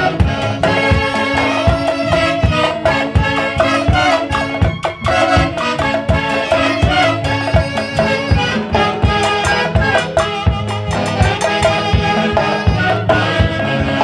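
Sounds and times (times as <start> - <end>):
band playing dance music: 0.0 - 14.0.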